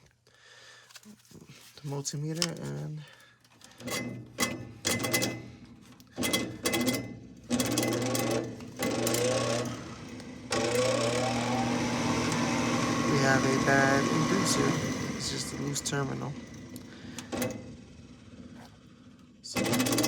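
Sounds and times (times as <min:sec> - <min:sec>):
clicks: 0:12.2 - 0:12.5.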